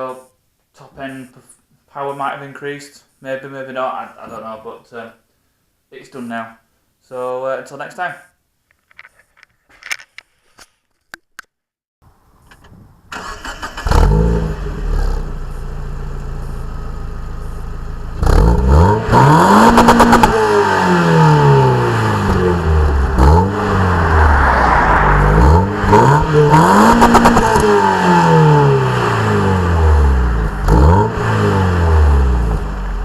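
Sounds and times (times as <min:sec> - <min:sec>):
car engine starting and revving: 0:13.1 - 0:33.0.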